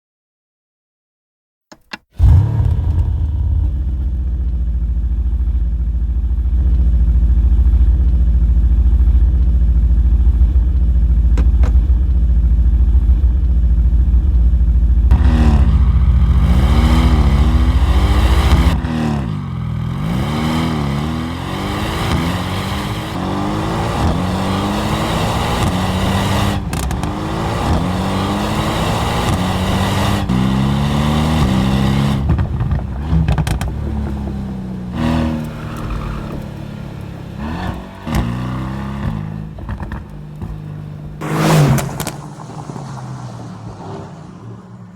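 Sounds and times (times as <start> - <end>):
car engine revving through gears: 2.2 - 4.6, 15.1 - 44.0.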